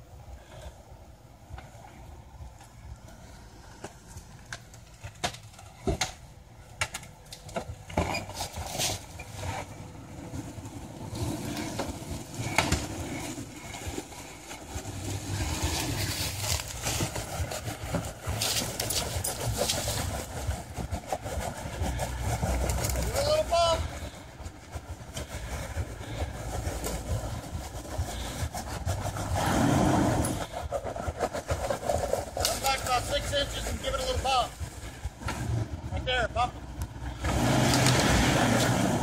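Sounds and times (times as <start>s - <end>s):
off-road vehicle engine: 0.0s - 39.0s.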